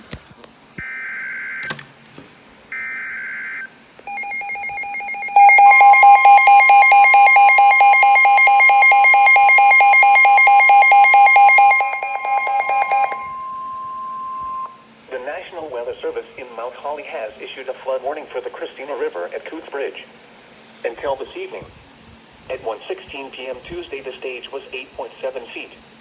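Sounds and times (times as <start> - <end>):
pulsing electronic alarm tone: 2.8 - 14.8
steady high tone: 4.0 - 14.8.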